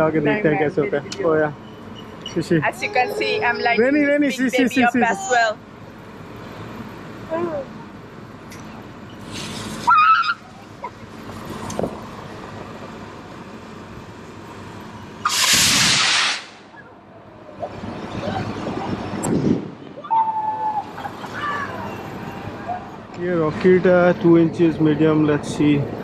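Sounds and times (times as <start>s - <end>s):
firework rocket hissing: 9.3s - 9.9s, 15.2s - 16.6s.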